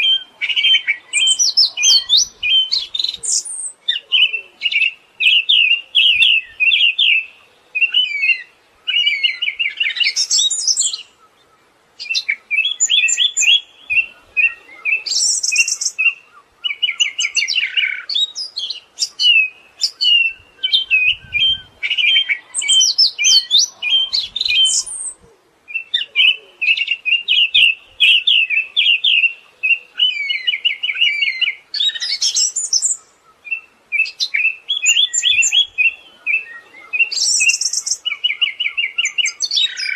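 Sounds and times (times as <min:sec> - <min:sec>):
thrush singing trills: 0:00.0 - 0:11.4, 0:12.0 - 0:39.9.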